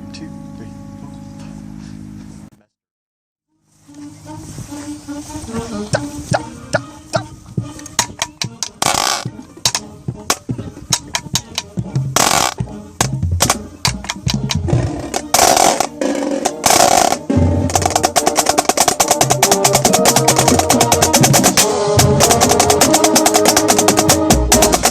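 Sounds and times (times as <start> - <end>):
marching band playing: 3.8 - 24.9
snare drum strokes: 5.8 - 24.9.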